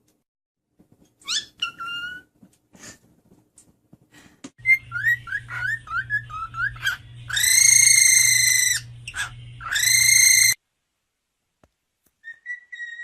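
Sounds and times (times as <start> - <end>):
cockatiel whistling: 4.6 - 10.6, 12.2 - 13.0.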